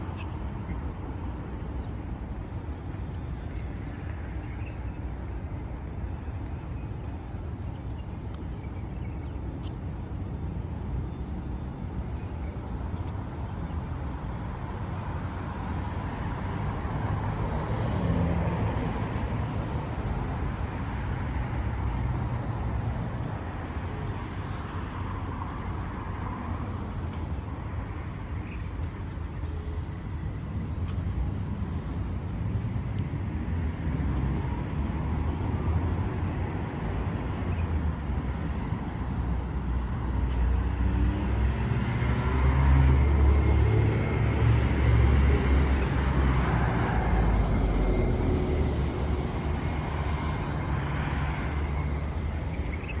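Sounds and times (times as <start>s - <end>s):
rumble of cars passing: 0.0s - 53.0s.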